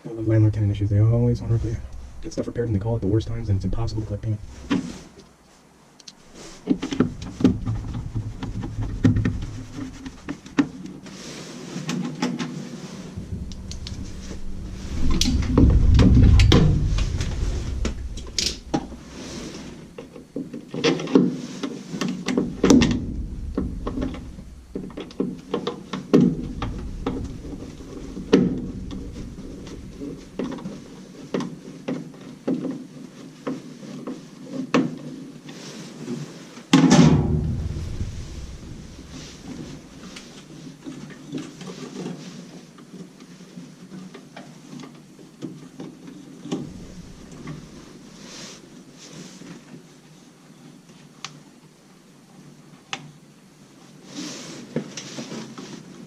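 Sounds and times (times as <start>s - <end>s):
heavy thuds: 1.2s - 5.2s, 6.2s - 11.0s, 13.0s - 20.4s, 22.3s - 31.0s, 36.9s - 40.4s, 46.5s - 48.3s.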